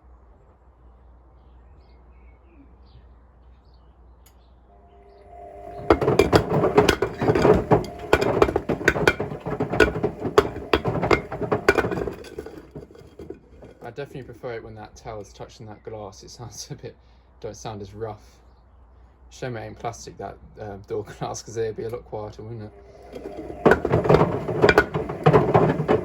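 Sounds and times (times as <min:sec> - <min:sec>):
washing machine motor whine: 0:04.7 - 0:13.8, 0:22.6 - 0:26.0
washing machine faint hum: 0:04.7 - 0:14.6, 0:22.6 - 0:26.0
bricks tumbling and banging in drum: 0:05.3 - 0:14.4, 0:22.8 - 0:26.0.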